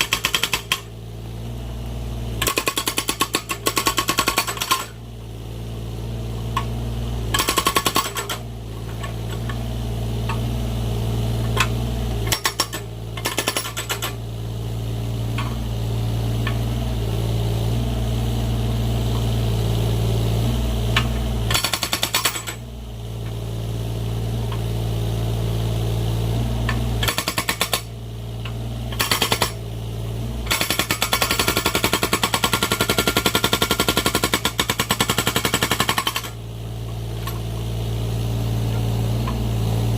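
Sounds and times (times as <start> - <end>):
hydraulic breaker hammering: 0.0 - 0.9, 2.4 - 5.0, 6.6 - 9.6, 11.5 - 14.2, 21.0 - 22.7, 26.7 - 27.9, 28.9 - 29.6, 30.4 - 36.4
diesel engine running: 0.0 - 39.9.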